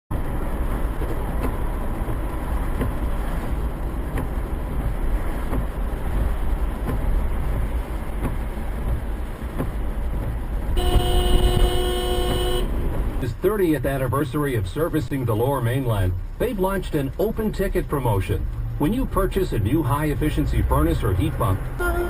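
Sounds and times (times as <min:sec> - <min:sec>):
car road noise: 0:00.1 - 0:22.0
car horn blast: 0:10.8 - 0:12.8, 0:21.8 - 0:22.0.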